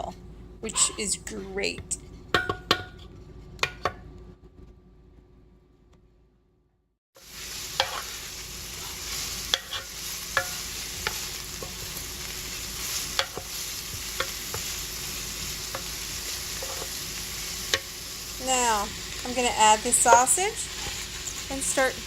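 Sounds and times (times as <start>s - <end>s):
onion sizzling in oil: 7.2s - 22.0s.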